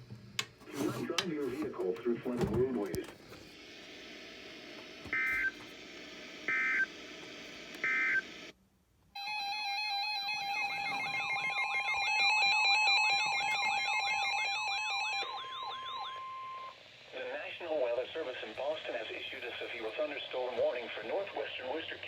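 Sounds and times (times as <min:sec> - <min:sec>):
data tone bursts: 0:05.1 - 0:05.6, 0:06.5 - 0:06.9, 0:07.8 - 0:08.3, 0:14.8 - 0:16.8
warbling chirping electronic tones: 0:10.5 - 0:16.8.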